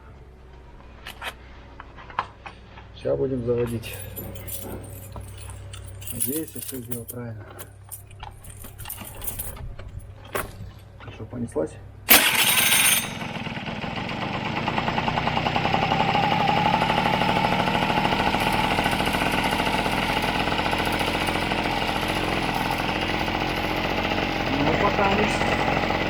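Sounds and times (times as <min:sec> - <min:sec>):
scooter engine starting and idling: 0:11.9 - 0:26.0.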